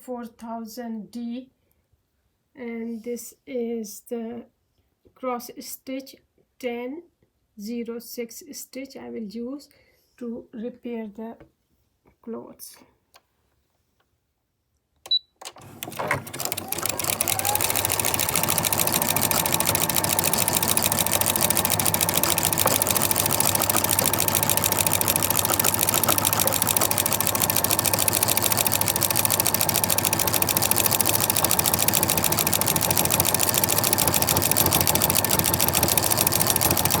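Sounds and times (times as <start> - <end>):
sewing machine running: 15.5 - 37.0.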